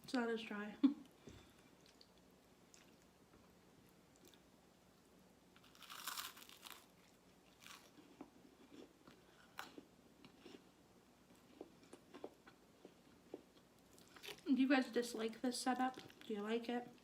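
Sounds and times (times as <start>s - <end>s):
crunch of biting bread: 5.6s - 8.0s.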